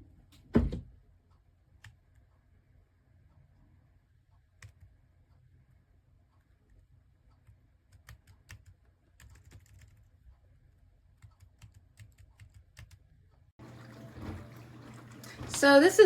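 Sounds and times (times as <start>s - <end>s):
keypad keys clicking: 7.9s - 10.0s.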